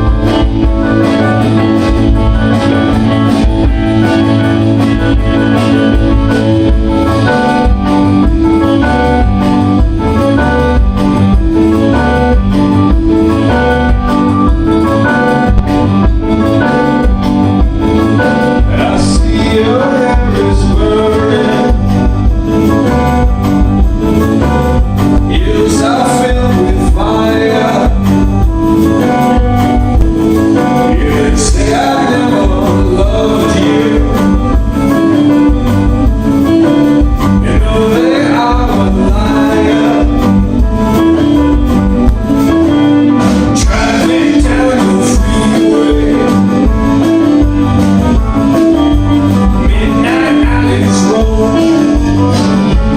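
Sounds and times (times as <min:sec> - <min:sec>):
live rock band playing: 0:00.0 - 0:52.9
organ: 0:00.0 - 0:52.9
person singing: 0:18.0 - 0:22.3, 0:25.3 - 0:28.5, 0:30.6 - 0:35.3, 0:36.8 - 0:41.4, 0:43.5 - 0:47.4, 0:48.8 - 0:52.9.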